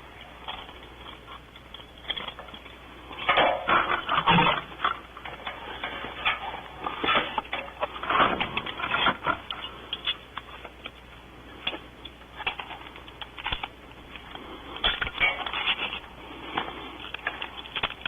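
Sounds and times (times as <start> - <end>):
objects clicking and rustling: 11.6 - 18.0.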